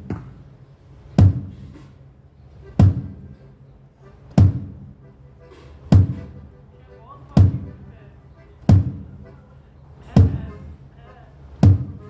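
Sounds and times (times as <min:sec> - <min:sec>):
low drum hits: 0:01.2 - 0:01.6, 0:02.8 - 0:03.2, 0:04.4 - 0:04.9, 0:05.9 - 0:06.4, 0:07.4 - 0:07.8, 0:08.7 - 0:09.1, 0:10.2 - 0:10.5.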